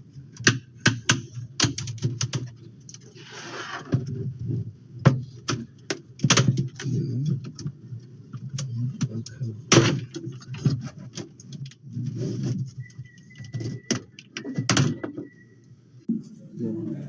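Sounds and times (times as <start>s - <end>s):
plastic scraping: 8.5s - 15.2s.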